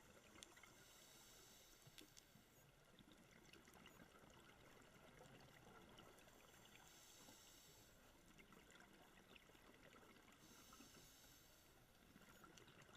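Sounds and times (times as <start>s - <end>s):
small underwater clicks: 0.0s - 7.6s, 8.2s - 12.9s
underwater hiss: 0.7s - 1.9s, 6.8s - 8.0s, 10.4s - 11.6s.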